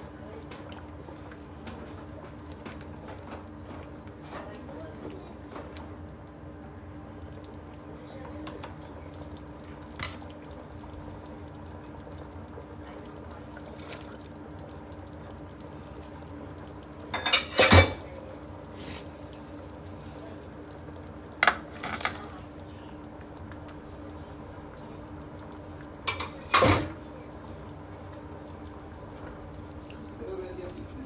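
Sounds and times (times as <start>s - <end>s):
cookware clattering: 17.1s - 18.1s, 21.4s - 22.4s, 26.1s - 27.0s.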